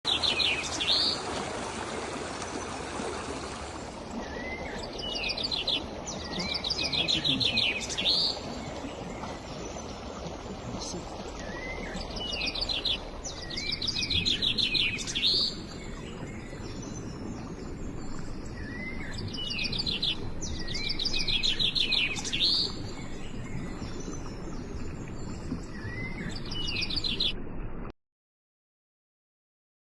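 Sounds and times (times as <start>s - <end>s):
small birds singing trills: 4.2s - 10.1s, 10.7s - 27.4s.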